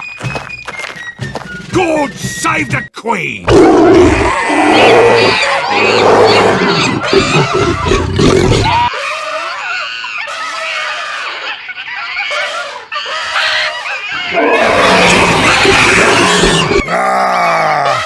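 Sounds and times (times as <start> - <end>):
cartoon screams and squeals: 13.2 - 18.0.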